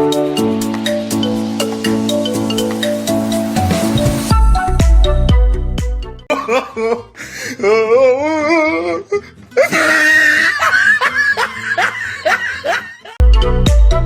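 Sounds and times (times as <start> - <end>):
music: 0.0 - 6.3, 8.5 - 14.0
hearty human laughter: 6.3 - 13.2.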